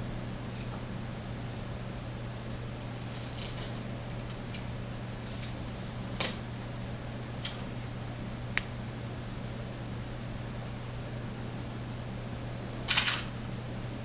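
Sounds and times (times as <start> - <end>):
metal lock parts clicking: 12.9 - 13.3.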